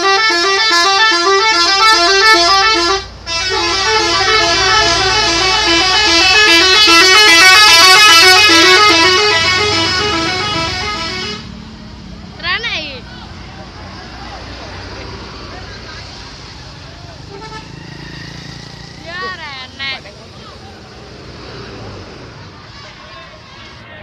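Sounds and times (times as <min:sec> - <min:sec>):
bus musical horn: 0:00.0 - 0:11.6, 0:17.3 - 0:18.0.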